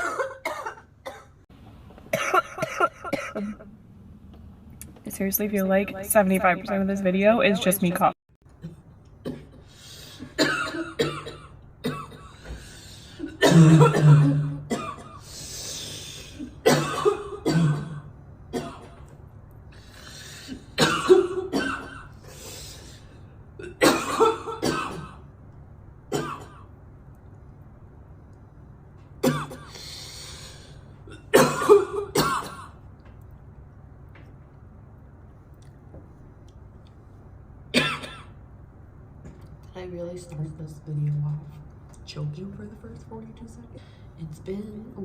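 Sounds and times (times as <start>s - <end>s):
girl coughing harshly: 0.0s - 1.4s, 2.1s - 3.7s, 10.2s - 12.6s, 13.2s - 15.2s, 16.4s - 19.0s, 20.8s - 22.1s, 23.6s - 25.2s, 26.1s - 26.7s, 29.2s - 29.7s, 31.1s - 32.8s, 37.7s - 38.4s.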